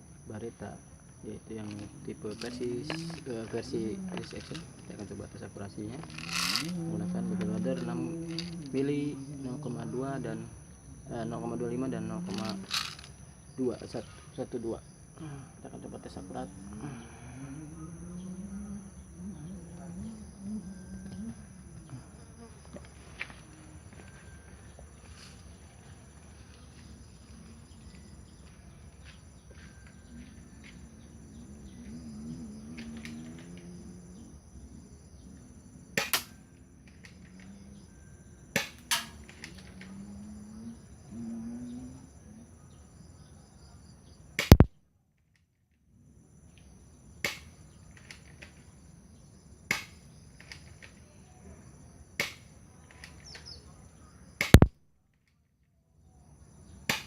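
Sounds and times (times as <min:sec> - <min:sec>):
insects chirring: 0:00.0 - 0:57.0
airsoft pistol shots: 0:36.0 - 0:36.3, 0:54.4 - 0:54.7.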